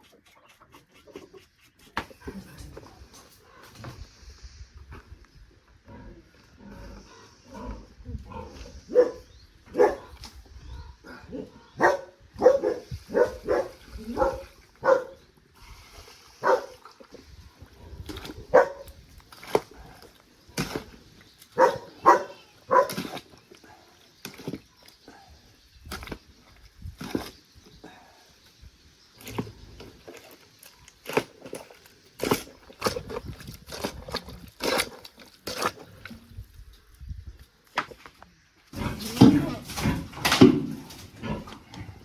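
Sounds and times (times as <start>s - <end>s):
farm animals calling: 21.6s - 23.0s.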